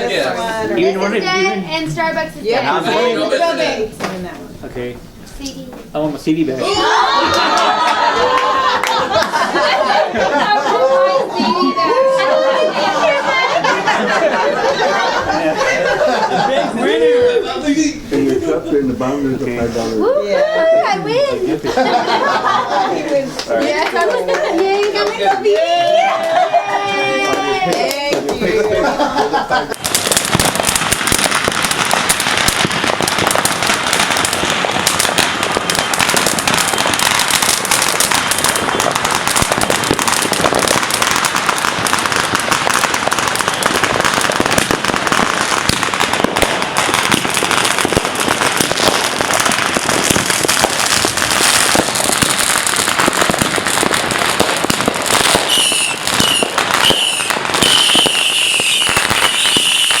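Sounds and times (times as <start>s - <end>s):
firecrackers crackling: 0.0s - 60.0s
steady high whistle: 55.5s - 60.0s.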